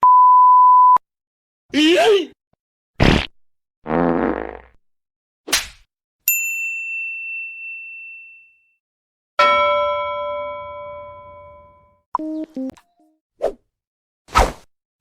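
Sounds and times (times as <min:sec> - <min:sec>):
high ding: 0:06.3 - 0:08.7, 0:09.4 - 0:11.9
low bell strike: 0:09.4 - 0:11.8.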